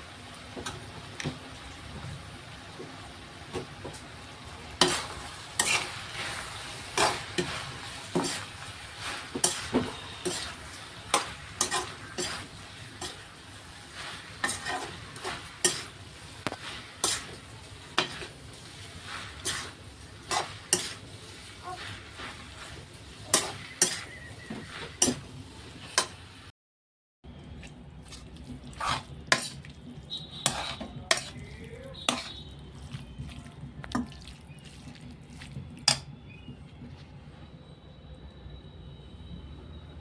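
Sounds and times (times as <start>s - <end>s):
okra sizzling in a pan: 0.0s - 26.5s, 28.6s - 32.5s
spatula scraping a pan: 4.8s - 26.2s, 28.1s - 32.5s.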